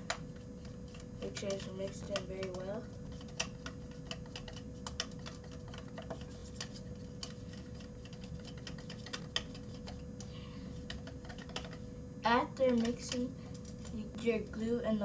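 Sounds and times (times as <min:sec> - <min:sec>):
faint steady hum: 0:00.0 - 0:15.0
utensil tapping in a bowl: 0:00.9 - 0:10.0, 0:10.8 - 0:11.8.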